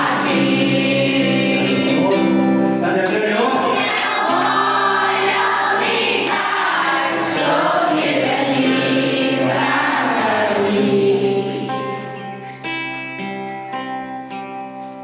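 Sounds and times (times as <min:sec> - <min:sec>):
choir singing: 0:00.0 - 0:02.6, 0:03.5 - 0:12.5.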